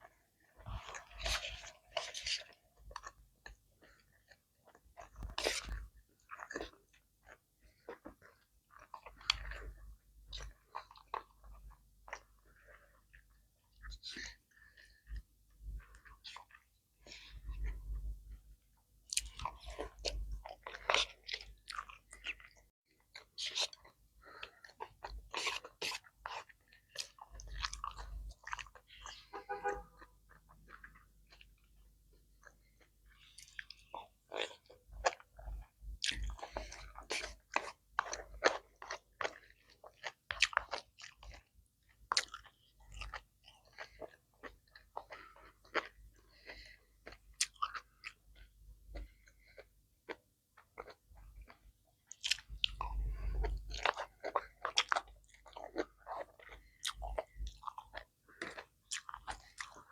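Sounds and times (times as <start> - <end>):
person chewing and biting food: 0.0 - 18.4, 19.1 - 59.9.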